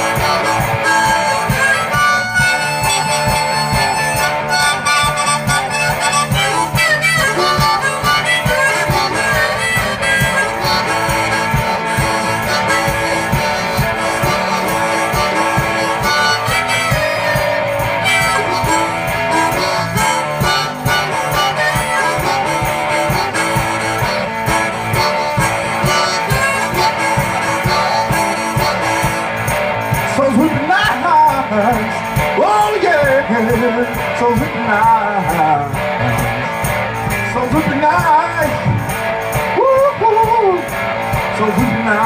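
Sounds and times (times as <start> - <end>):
electric guitar: 0.0 - 42.0
harmonica: 0.0 - 42.0
steady beat: 0.0 - 42.0
person singing: 30.0 - 36.6, 39.5 - 42.0.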